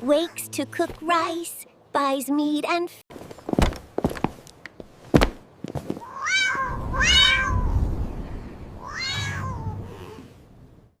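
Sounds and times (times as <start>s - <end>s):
cat meowing: 6.0s - 7.8s, 8.8s - 10.3s.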